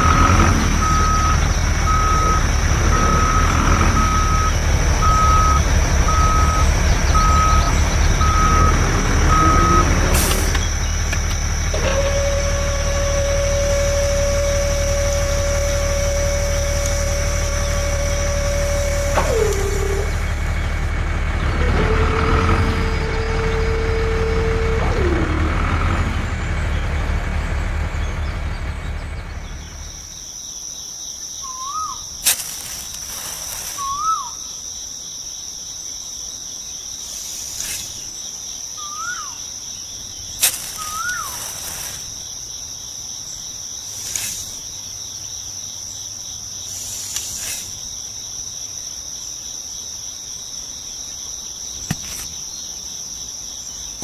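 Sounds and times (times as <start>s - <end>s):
small motor humming: 0.0s - 20.4s
cricket trill: 0.0s - 54.0s
bird chirps: 0.7s - 12.6s, 27.9s - 32.2s, 33.6s - 34.7s, 36.8s - 48.4s.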